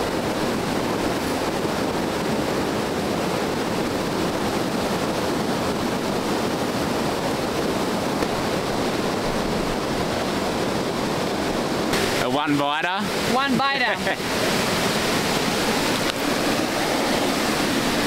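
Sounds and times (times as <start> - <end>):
creek water rushing: 0.0 - 18.0.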